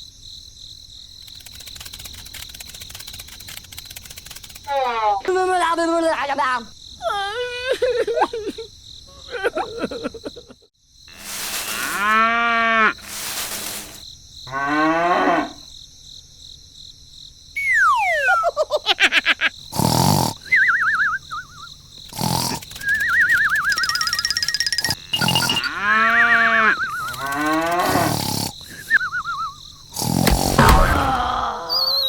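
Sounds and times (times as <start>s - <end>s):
cartoon cow-like moo: 14.5s - 15.7s, 24.9s - 28.5s
long falling whistle: 17.6s - 18.4s
sharp cartoon hits: 30.0s - 31.6s.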